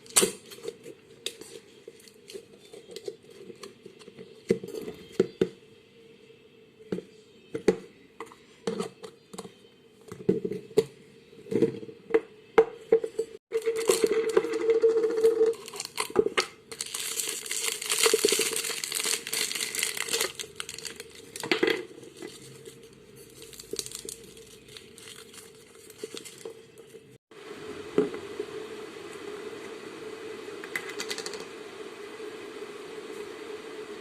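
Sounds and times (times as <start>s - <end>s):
faint steady hum: 10.9s - 34.0s.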